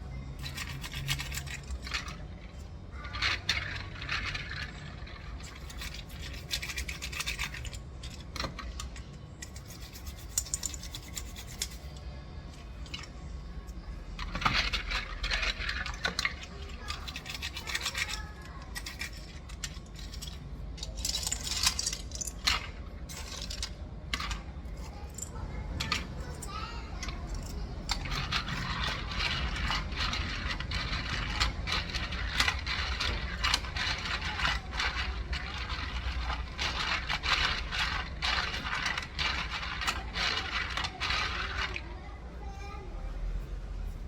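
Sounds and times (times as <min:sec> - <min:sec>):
brush scrubbing keyboard: 0:05.4 - 0:07.7, 0:09.5 - 0:12.0, 0:28.1 - 0:41.8.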